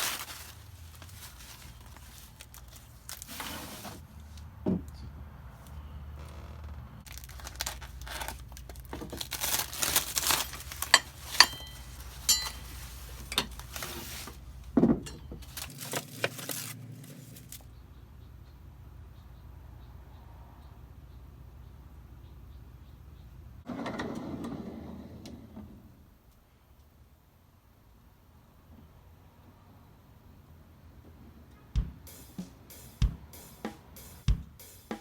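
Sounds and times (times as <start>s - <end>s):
packing material crinkling and tearing: 0.0s - 4.0s, 6.2s - 14.6s, 15.4s - 17.6s.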